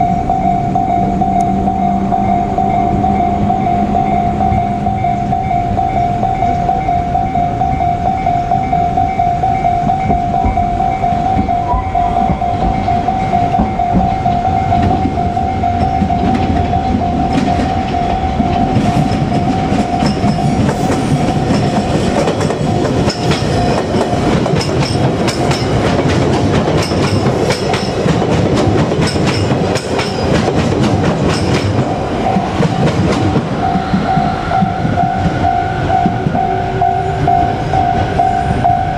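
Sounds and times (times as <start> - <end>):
level-crossing alarm ringing: 0.0 - 28.3, 29.0 - 38.9
train rumble: 0.0 - 38.9
wheels clattering over rail joints: 10.0 - 35.5.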